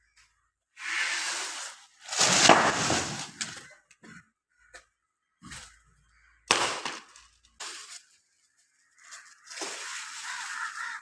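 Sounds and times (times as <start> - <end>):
wood cracking: 2.1 - 4.1, 6.5 - 8.2.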